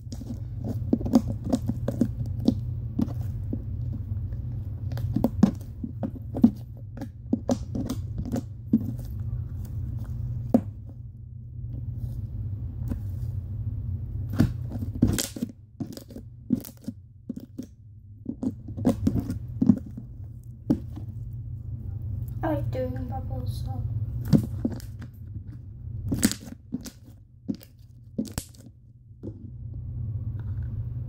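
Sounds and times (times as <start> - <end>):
steady low hum: 0.0 - 31.0
wet slime popping and squelching: 14.3 - 17.7, 26.0 - 28.8.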